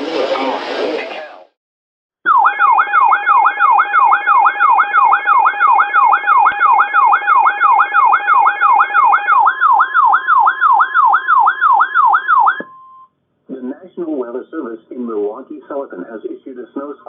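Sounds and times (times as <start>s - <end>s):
electronic siren tone sweeping downward: 2.3s - 12.7s.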